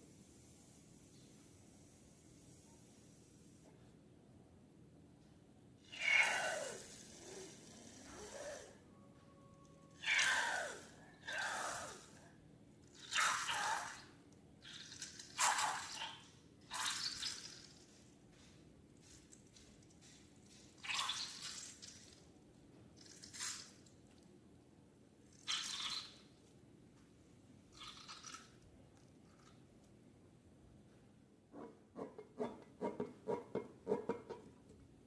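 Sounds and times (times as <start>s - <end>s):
wet slime squelching: 19.0s - 22.2s, 25.4s - 26.3s.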